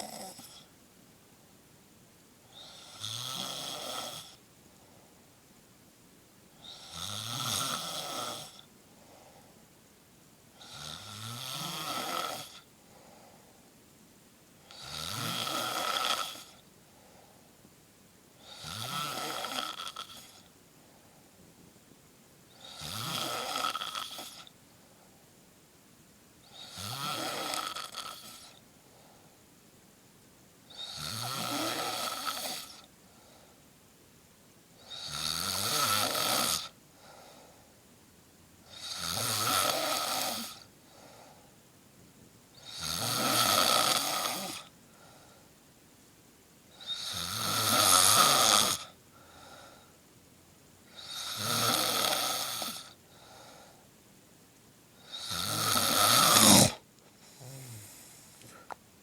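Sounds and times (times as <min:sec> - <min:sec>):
person snoring: 0:06.7 - 0:08.6, 0:10.6 - 0:12.6, 0:30.8 - 0:32.8, 0:42.6 - 0:44.7, 0:46.8 - 0:48.9, 0:51.0 - 0:53.0, 0:55.0 - 0:58.7.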